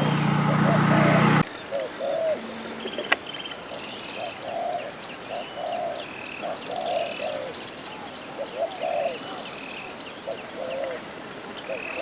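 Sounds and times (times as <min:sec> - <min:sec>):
high-pitched whine: 0:00.0 - 0:01.4
doves cooing: 0:00.0 - 0:03.2, 0:04.2 - 0:07.6, 0:08.4 - 0:09.4, 0:10.3 - 0:11.0
bird chirps: 0:00.0 - 0:11.0.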